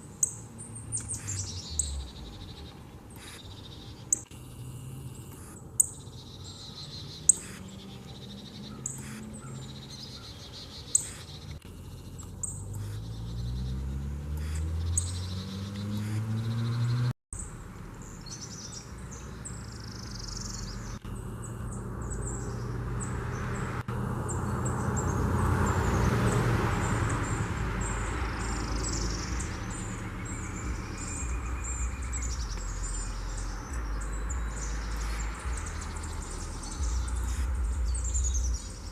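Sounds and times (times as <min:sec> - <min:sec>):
birds chirping: 0:00.0 - 0:38.9
low hum rising in pitch: 0:20.8 - 0:38.9.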